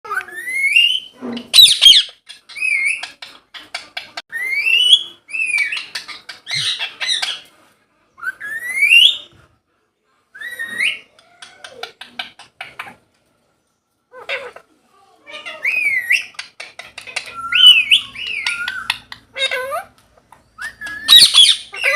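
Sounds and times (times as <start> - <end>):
parrot squawk: 0.1 - 3.1, 14.1 - 19.9, 20.6 - 21.9
parrots screeching: 0.1 - 7.5, 8.2 - 9.2, 10.4 - 13.0, 14.1 - 21.9
parrot clicking chatter: 16.2 - 19.8.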